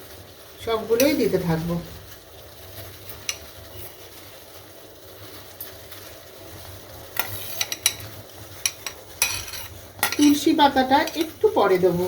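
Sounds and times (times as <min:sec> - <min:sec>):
water boiling in a pot: 0:00.0 - 0:12.0
metal spoon clinking against pot: 0:08.6 - 0:11.8.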